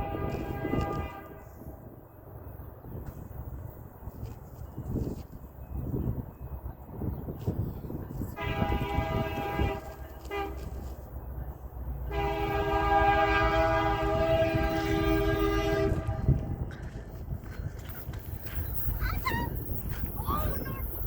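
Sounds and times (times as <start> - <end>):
locomotive air horn: 0.0 - 1.8, 8.4 - 11.0, 12.0 - 16.6
train rumbling: 0.0 - 21.0.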